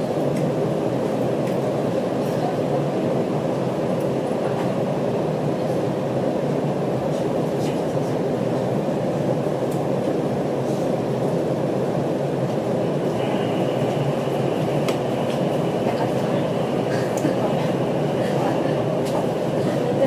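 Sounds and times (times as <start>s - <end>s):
train rumble: 0.0s - 20.0s.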